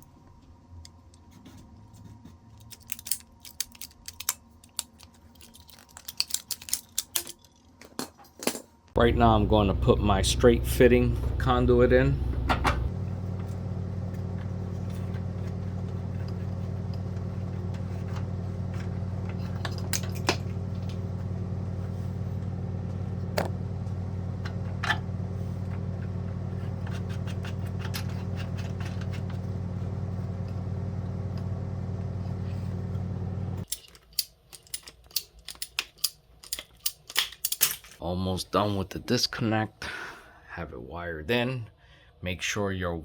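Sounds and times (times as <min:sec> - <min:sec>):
low mechanical hum: 0:00.0 - 0:39.1
metallic clicks of fittings: 0:02.6 - 0:07.4, 0:33.6 - 0:38.0.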